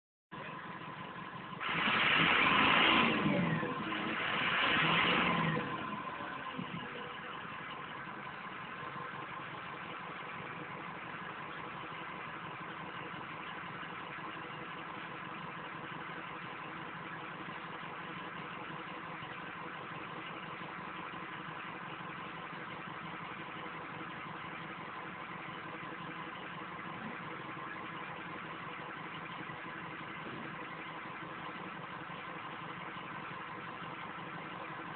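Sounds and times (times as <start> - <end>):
diesel truck engine idling: 0.3 - 34.9
diesel truck engine revving: 0.3 - 34.9.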